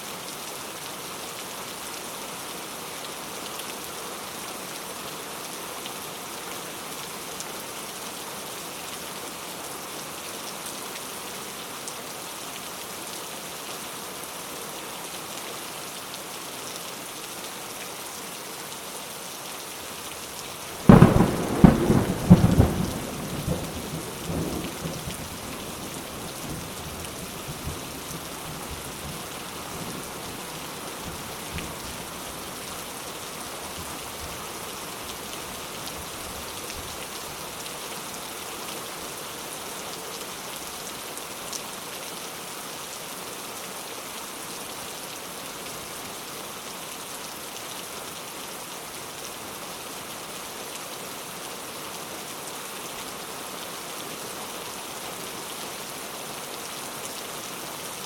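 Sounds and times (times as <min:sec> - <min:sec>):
steady rain: 0:00.0 - 0:58.0
thunder rumbling: 0:20.8 - 0:28.0.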